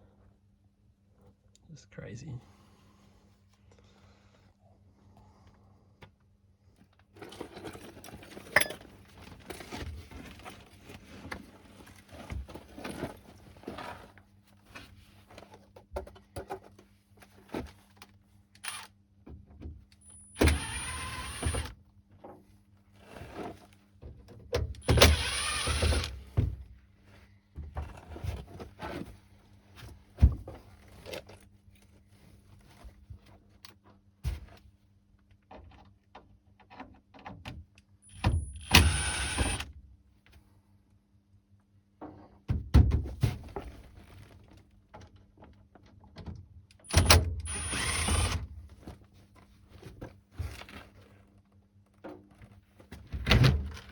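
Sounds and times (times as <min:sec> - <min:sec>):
small electric motor whirring: 0:20.3 - 0:21.7, 0:24.9 - 0:26.2, 0:38.1 - 0:39.6, 0:47.0 - 0:48.4.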